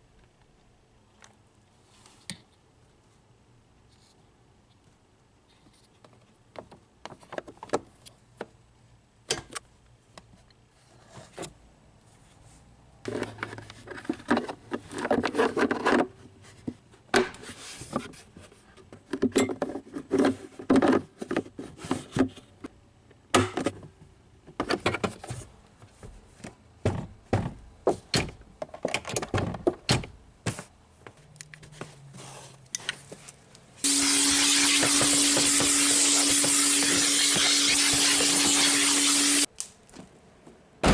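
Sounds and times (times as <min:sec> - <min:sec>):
loud steady hiss: 0:33.8 - 0:39.5.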